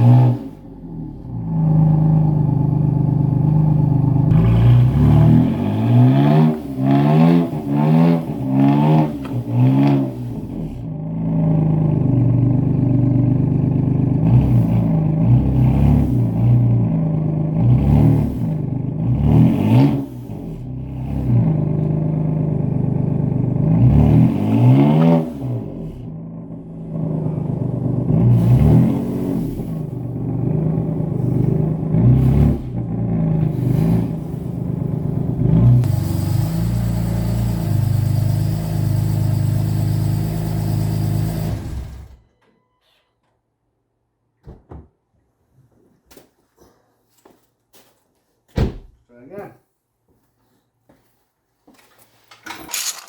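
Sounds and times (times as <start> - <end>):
car engine revving: 0.0 - 42.2.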